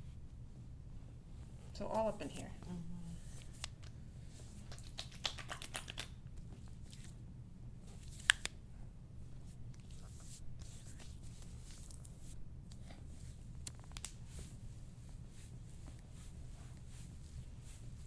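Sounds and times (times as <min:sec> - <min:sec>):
hands rubbing over body and clothing: 0:01.4 - 0:07.2, 0:09.4 - 0:18.0.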